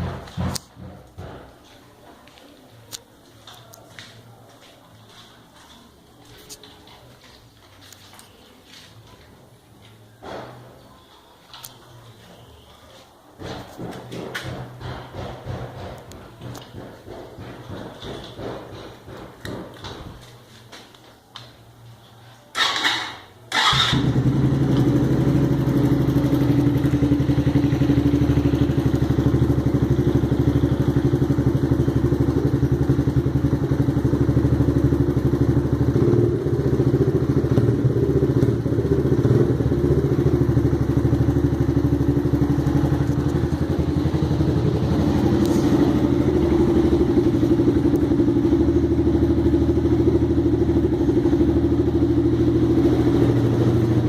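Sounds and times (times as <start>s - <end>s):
motorcycle engine starting and idling: 0.0s - 1.5s, 13.4s - 20.2s, 22.5s - 54.0s.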